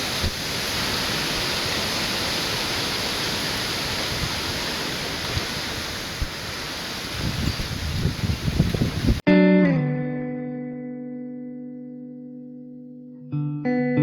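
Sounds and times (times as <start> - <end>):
heavy rain: 0.0 - 9.2
wind: 0.0 - 9.3.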